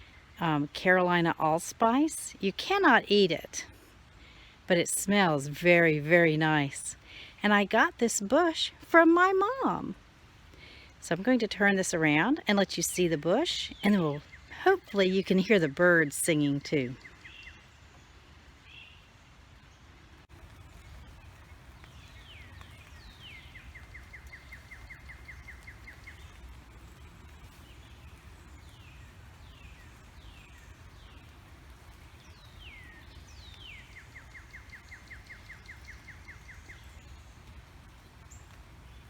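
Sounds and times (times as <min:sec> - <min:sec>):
songbird singing with trill: 0:11.0 - 0:19.1, 0:20.8 - 0:31.4, 0:32.0 - 0:39.0.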